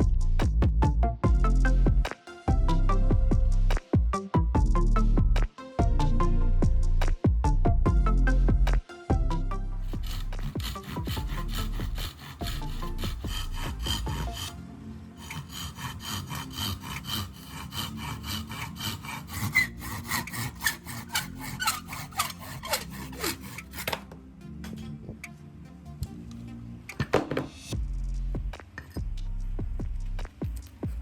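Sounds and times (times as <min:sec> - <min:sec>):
hand saw cutting wood: 0:09.8 - 0:14.6, 0:15.2 - 0:24.1.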